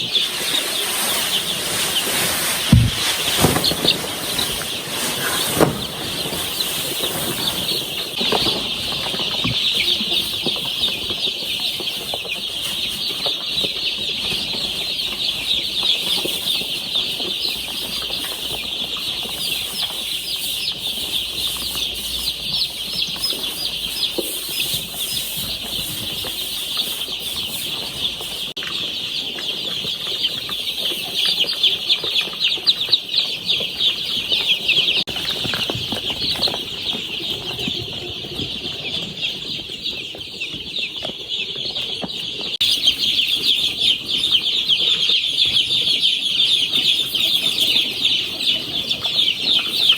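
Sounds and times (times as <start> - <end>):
chicks peeping: 0.0 - 49.9.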